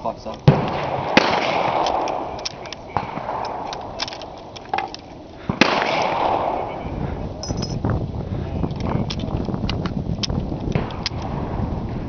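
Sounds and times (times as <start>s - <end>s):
rifle shot with echo: 0.4s - 7.5s
light clicks: 1.7s - 5.1s, 8.7s - 11.3s.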